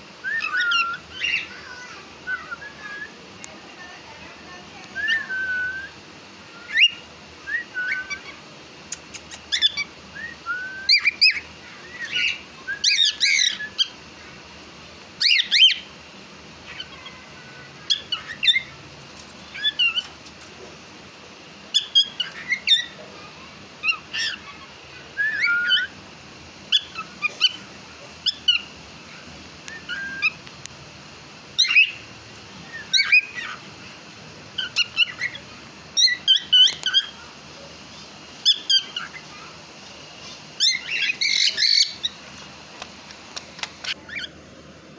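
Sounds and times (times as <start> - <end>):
cockatiel chirping and whistling: 0.2 - 1.5, 5.0 - 5.9, 6.6 - 8.3, 9.1 - 13.9, 15.2 - 15.9, 21.7 - 23.0, 23.8 - 24.6, 25.2 - 26.0, 29.7 - 30.4, 31.6 - 32.0, 32.7 - 33.6, 34.6 - 35.4, 36.0 - 37.2, 38.4 - 39.3, 40.6 - 42.2.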